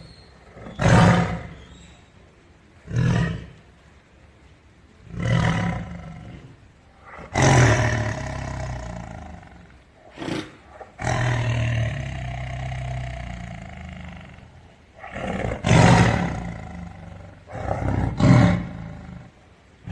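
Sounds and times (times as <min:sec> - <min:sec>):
tiger roaring: 0:00.4 - 0:01.6, 0:02.8 - 0:03.7, 0:05.0 - 0:19.9.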